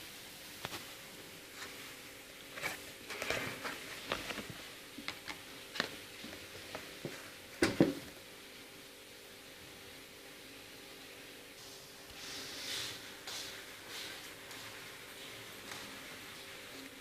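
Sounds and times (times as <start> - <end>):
packaging rustling: 2.5 - 8.1
books thumping: 5.8 - 8.1.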